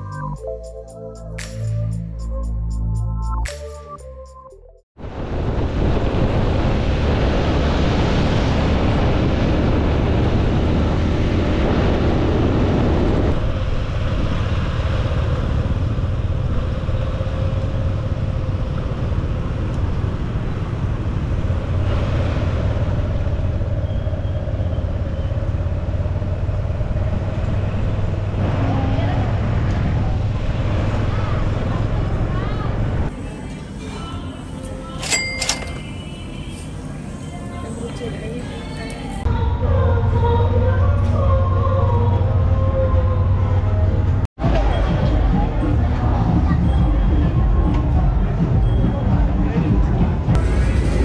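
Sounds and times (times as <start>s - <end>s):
wind noise on microphone: 5.0s - 17.2s.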